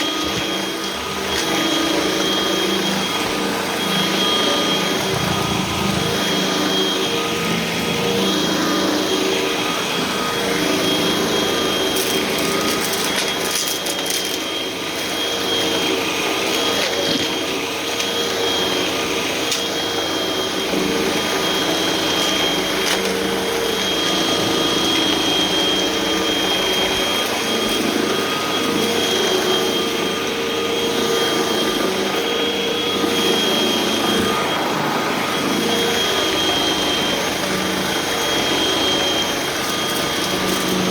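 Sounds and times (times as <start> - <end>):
vacuum cleaner running: 0.0 - 40.9.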